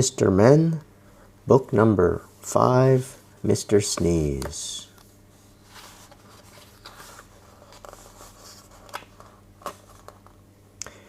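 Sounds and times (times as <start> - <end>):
book pages rustling: 3.8 - 10.4.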